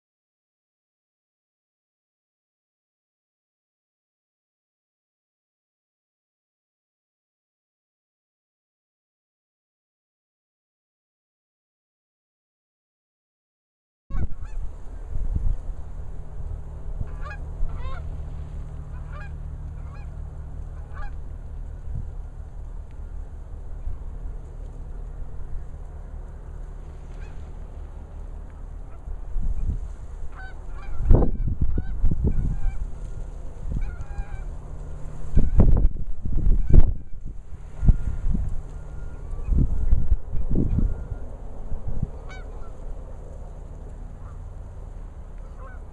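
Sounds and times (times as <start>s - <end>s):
geese honking: 14.1s - 45.9s
steady low rumble: 14.1s - 45.9s.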